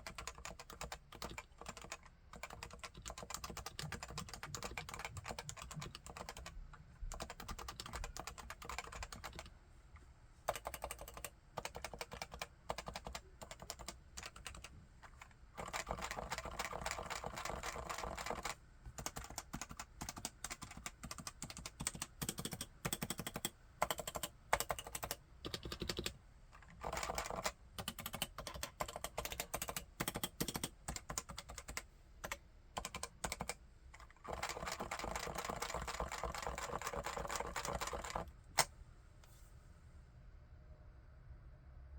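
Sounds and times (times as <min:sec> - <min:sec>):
keyboard typing: 0:00.0 - 0:06.5, 0:07.1 - 0:09.5, 0:10.5 - 0:38.7.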